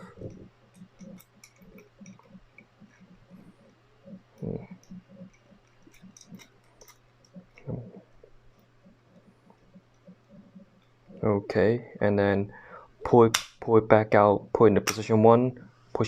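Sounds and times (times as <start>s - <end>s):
padlock dials clicking: 0.7s - 3.0s, 4.6s - 7.6s.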